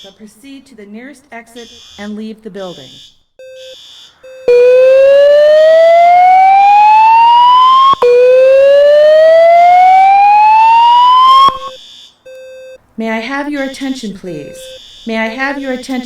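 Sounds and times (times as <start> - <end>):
rising whoop alarm tone: 4.5 - 11.8.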